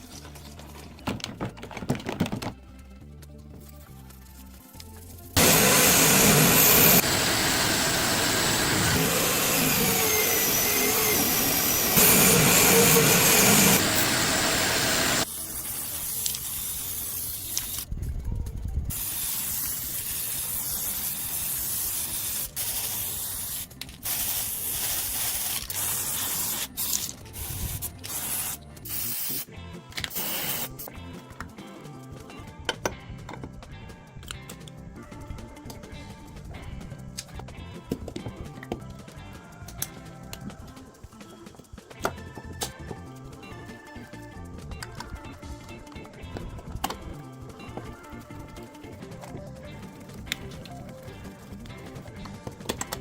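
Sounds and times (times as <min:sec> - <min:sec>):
compressed air spray hissing: 0:05.4 - 0:17.9, 0:18.9 - 0:29.5, 0:30.1 - 0:30.9.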